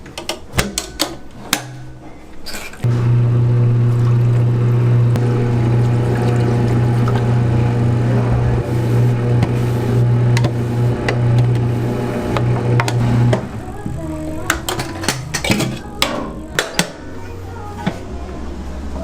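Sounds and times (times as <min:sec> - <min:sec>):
machine motor humming: 0:02.9 - 0:16.6.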